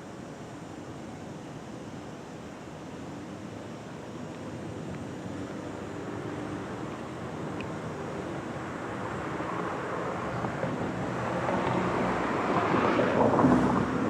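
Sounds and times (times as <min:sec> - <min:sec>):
vehicle driving past: 0:09.4 - 0:14.0.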